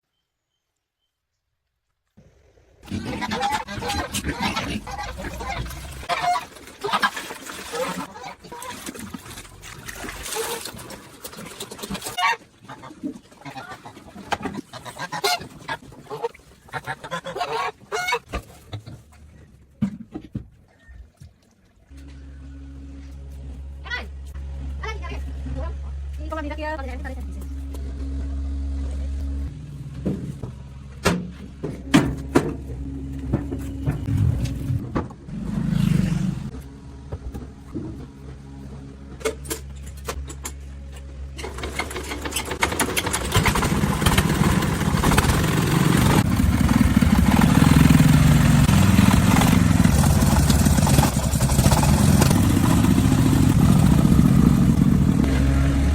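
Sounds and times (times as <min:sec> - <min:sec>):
geese honking: 0:02.9 - 0:08.8, 0:12.1 - 0:14.0, 0:14.6 - 0:18.3
vehicle engine running: 0:22.0 - 0:55.9
sharp knocks and clunks: 0:30.0 - 0:35.3.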